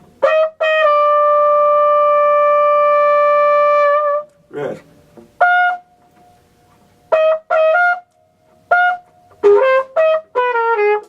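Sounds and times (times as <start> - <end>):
flugelhorn playing short notes: 0.2 - 4.3, 5.4 - 5.9, 7.1 - 8.1, 8.7 - 11.0.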